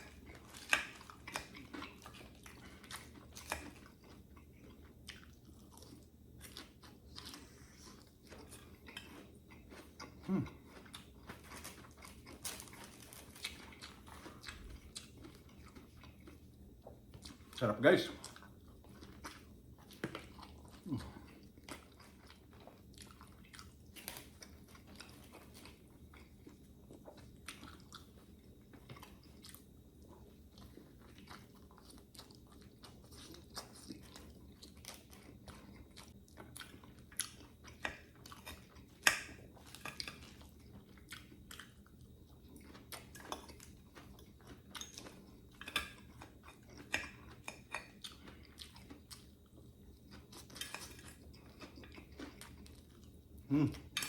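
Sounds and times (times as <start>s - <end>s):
person chewing crunchy food: 0.0s - 54.0s
mouth sounds: 53.5s - 53.9s.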